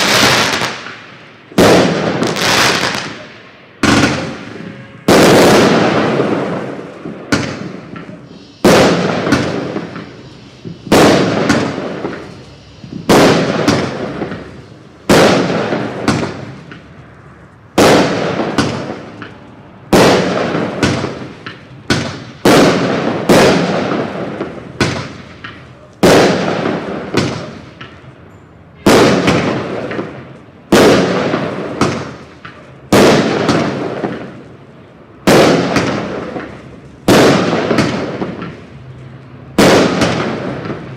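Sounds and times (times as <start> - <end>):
firework shells bursting: 7.3 - 16.9.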